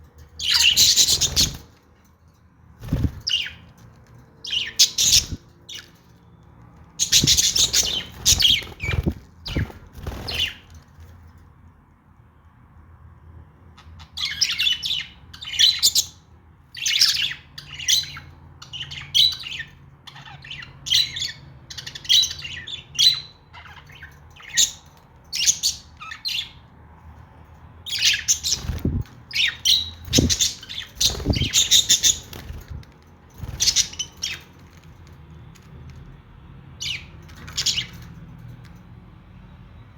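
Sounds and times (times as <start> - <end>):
budgerigars chirping and squawking: 0.4 - 1.8, 2.8 - 3.7, 4.4 - 6.0, 7.0 - 10.8, 16.8 - 26.6, 27.9 - 34.6, 36.8 - 38.1.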